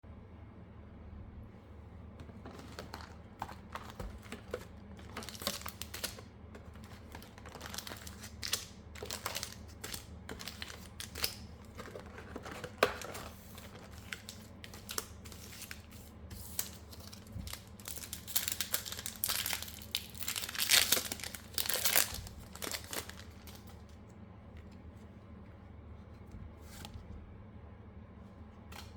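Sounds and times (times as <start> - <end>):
foil wrapper crinkling and tearing: 2.3 - 23.8.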